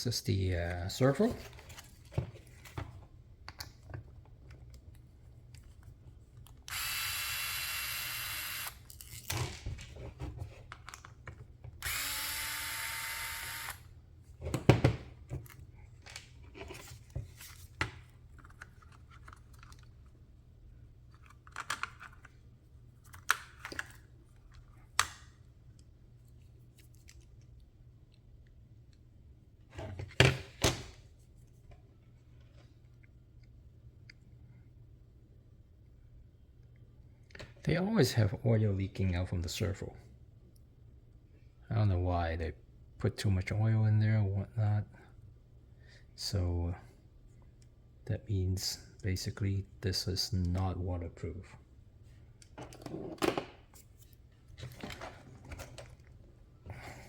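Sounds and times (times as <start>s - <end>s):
powered screwdriver motor: 6.7s - 9.3s, 11.8s - 13.8s
clicks of small parts handled: 21.1s - 22.3s.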